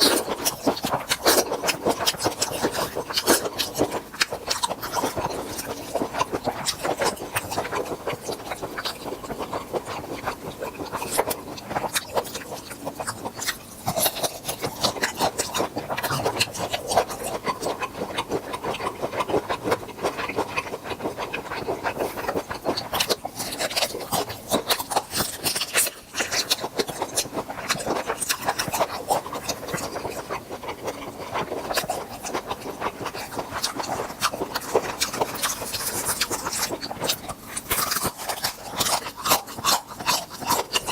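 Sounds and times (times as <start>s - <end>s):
chewing prawns crackling: 0.0s - 40.9s.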